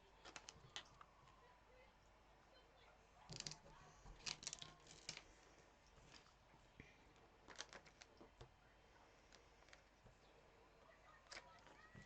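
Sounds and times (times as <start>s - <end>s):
vinyl stickers crackling and rustling: 0.1s - 1.5s, 3.2s - 8.6s, 9.2s - 12.0s.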